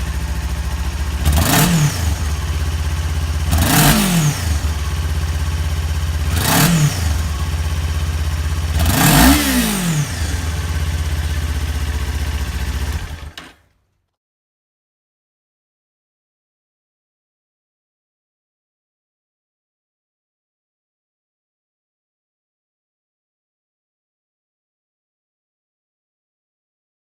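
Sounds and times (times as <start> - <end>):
motorcycle engine idling: 0.0 - 13.5
engine revs blipped: 1.1 - 5.3, 6.2 - 7.6, 8.6 - 11.0.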